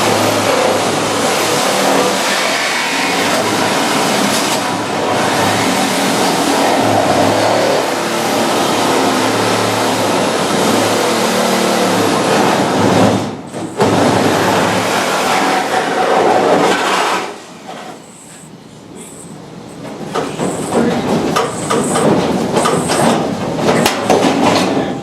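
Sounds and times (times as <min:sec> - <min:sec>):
power tool grinding sheet metal: 0:00.0 - 0:13.1.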